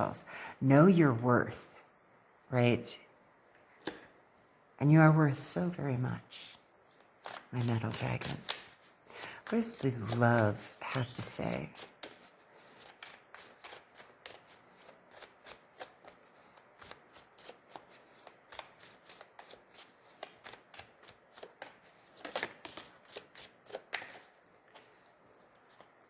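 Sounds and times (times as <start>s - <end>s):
cards being shuffled: 6.9s - 26.0s.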